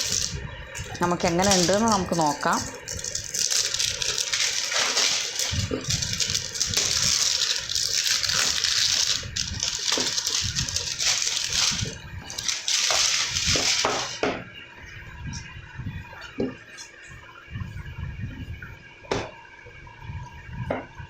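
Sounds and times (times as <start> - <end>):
packaging tearing: 0.0 - 14.2
plastic packaging crinkling: 0.0 - 14.2.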